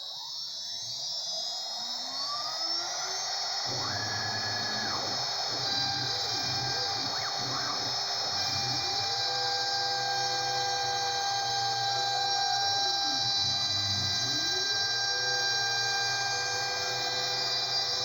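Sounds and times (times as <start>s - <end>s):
router spindle whine: 0.0s - 18.0s
stepper motors rising in pitch: 0.0s - 18.0s.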